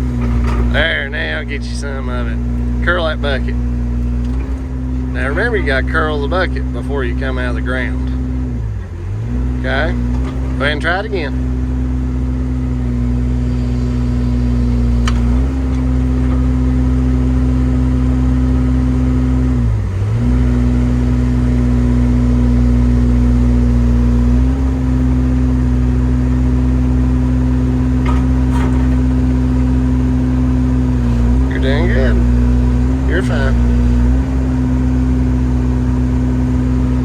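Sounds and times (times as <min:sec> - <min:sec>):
excavator diesel engine running: 0:00.0 - 0:37.0
bucket digging through dirt: 0:28.0 - 0:29.8.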